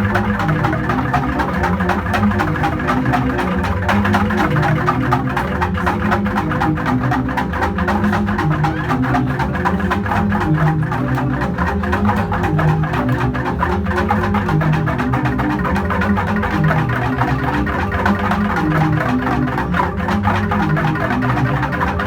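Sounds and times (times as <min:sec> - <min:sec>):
bamboo xylophone strikes: 0:00.0 - 0:22.0.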